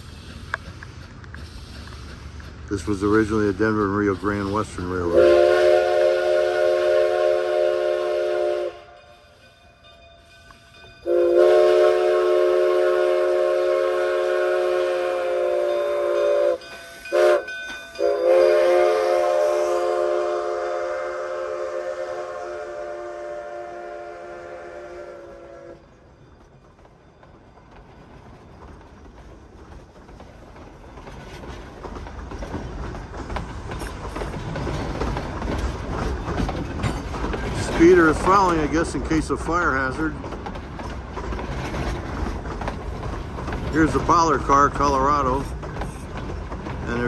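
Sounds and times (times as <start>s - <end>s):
train cars rumbling and clicking: 0.0s - 47.0s
locomotive steam whistle: 4.4s - 9.5s, 11.0s - 26.0s.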